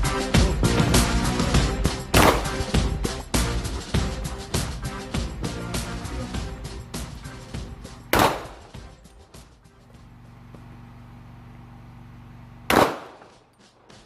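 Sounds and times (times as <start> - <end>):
gunshots with ringing tail: 0.8 - 2.9, 8.1 - 8.8, 12.7 - 13.4
low steady hum: 3.6 - 13.2.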